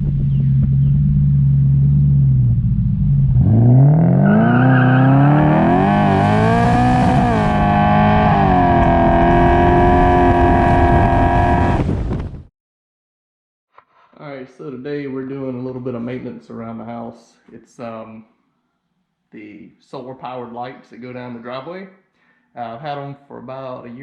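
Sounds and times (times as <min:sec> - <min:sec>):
car engine idling and revving: 0:00.0 - 0:11.8.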